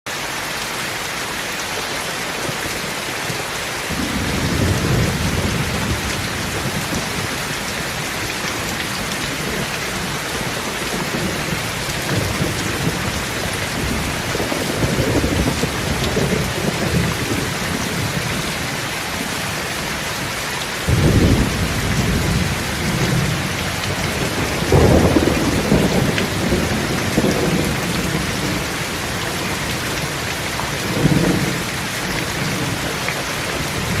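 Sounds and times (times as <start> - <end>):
steady rain: 0.1 - 34.0
thunder claps: 3.9 - 18.7, 20.9 - 30.2, 30.8 - 33.0
thunder rumbling: 3.9 - 19.6, 20.9 - 34.0.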